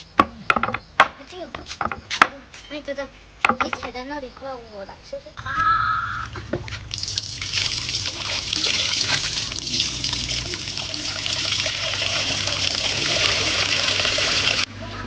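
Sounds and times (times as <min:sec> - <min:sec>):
water running and splashing: 0:06.3 - 0:14.7.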